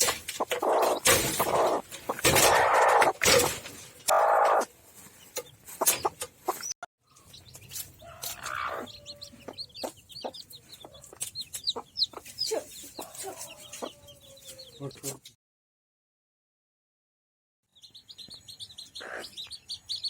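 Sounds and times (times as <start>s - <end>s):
sharp clicks and knocks: 0.0s - 4.2s
chicks peeping: 0.0s - 15.2s, 17.7s - 20.0s
hen clucking: 0.0s - 15.2s, 18.8s - 20.0s.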